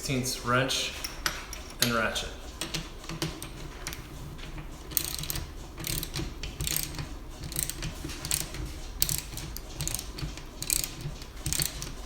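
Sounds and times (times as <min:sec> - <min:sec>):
socket ratchet clicking: 0:04.8 - 0:12.0.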